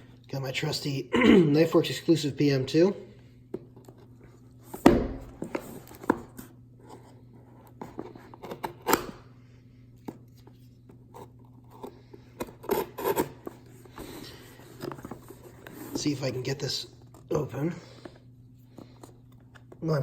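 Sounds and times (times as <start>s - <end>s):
knife scraping box tape: 11.6s - 13.6s.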